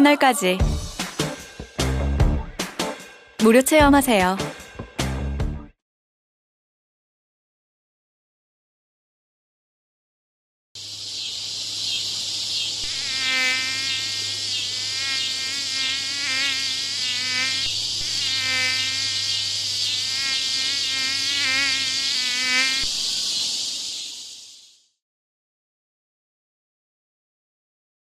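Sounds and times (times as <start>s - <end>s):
insect-like high buzzing: 10.8s - 25.0s.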